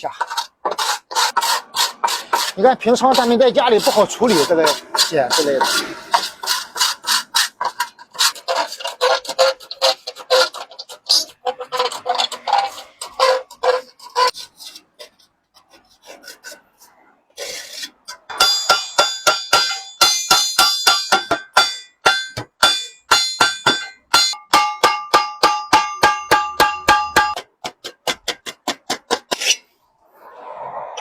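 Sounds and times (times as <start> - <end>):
scraping on metal: 0.0 - 24.4, 26.0 - 29.8
hammer striking metal kettle: 18.3 - 29.1.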